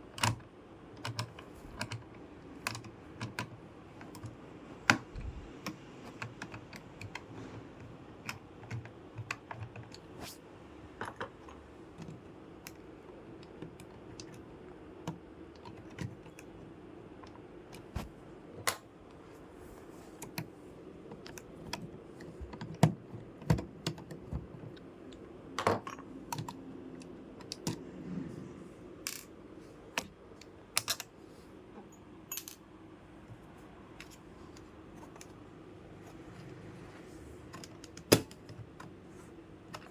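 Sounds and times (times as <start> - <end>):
faint steady hum: 0.0 - 39.9
clicks and taps of computer hardware: 0.1 - 7.3, 8.1 - 10.1.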